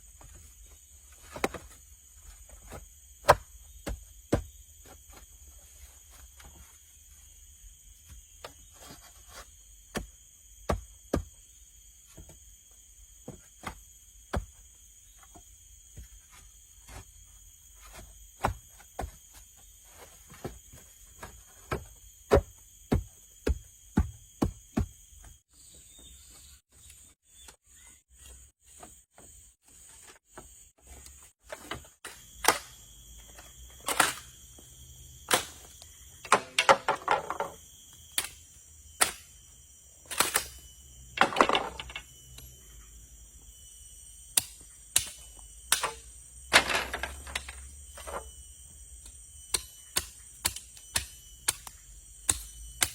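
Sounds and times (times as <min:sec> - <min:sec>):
insects chirring: 0:00.0 - 0:52.9.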